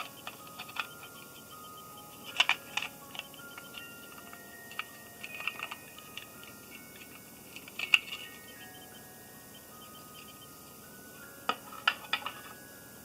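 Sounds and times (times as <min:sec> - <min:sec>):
small hard parts clicking: 0:00.0 - 0:09.0, 0:11.4 - 0:12.6
soft bell-like music: 0:00.0 - 0:13.0.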